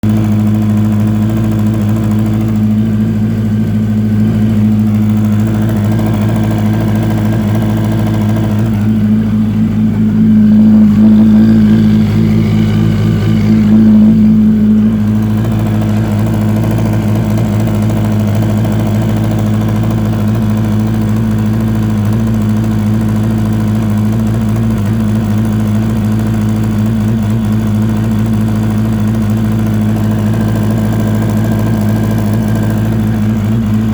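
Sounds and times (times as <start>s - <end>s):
motorcycle engine idling: 0.0s - 33.9s
strange engine noise: 0.0s - 33.9s.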